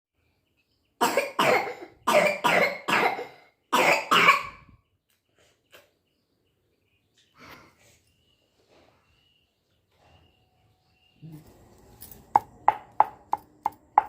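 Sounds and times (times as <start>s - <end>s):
girl coughing: 1.0s - 4.7s.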